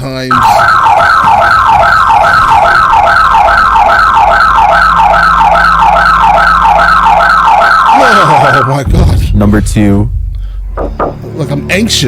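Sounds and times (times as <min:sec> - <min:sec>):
alarm siren wailing: 0:00.3 - 0:08.9.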